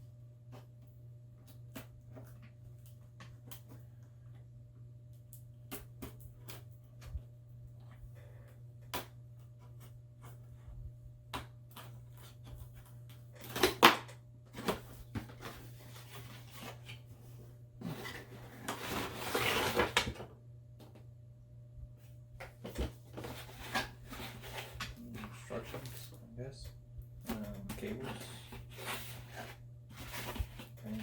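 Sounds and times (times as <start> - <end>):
steady low hum: 0.0 - 31.0
packaging rustling and scraping: 11.9 - 20.3, 22.6 - 26.2, 27.7 - 31.0.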